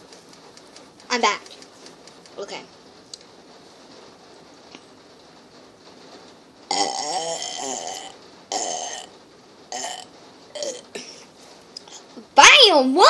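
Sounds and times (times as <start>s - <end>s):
person burping: 6.7s - 9.1s, 9.7s - 11.2s.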